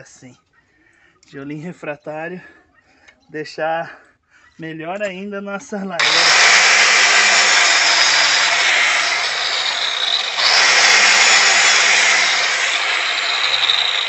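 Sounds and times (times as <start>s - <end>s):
angle grinder cutting brick: 6.0s - 14.0s.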